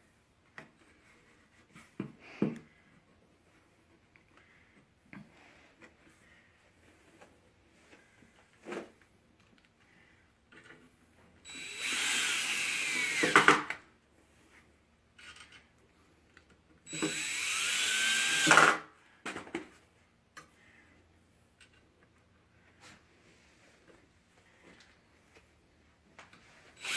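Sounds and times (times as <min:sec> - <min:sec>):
power drill driving screws into wood: 0:11.5 - 0:13.8, 0:16.9 - 0:18.9.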